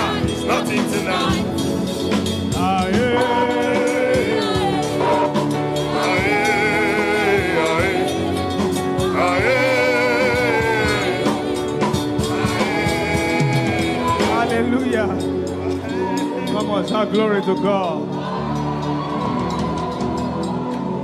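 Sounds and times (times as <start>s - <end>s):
instrumental backing: 0.0s - 21.0s
person singing long notes: 2.8s - 14.3s.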